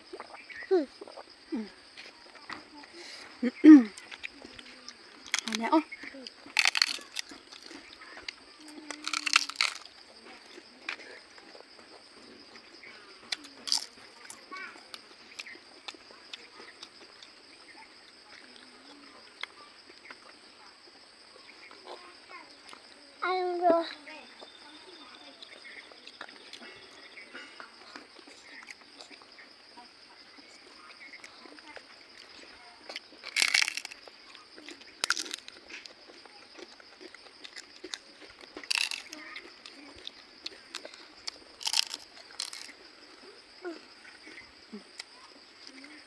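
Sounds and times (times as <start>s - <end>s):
mouth clicks and chewing: 0.0s - 2.7s, 3.9s - 11.8s, 12.5s - 17.4s, 18.0s - 20.4s, 25.4s - 29.5s, 30.3s - 43.3s
crunching from eating: 0.0s - 23.0s, 23.8s - 46.0s.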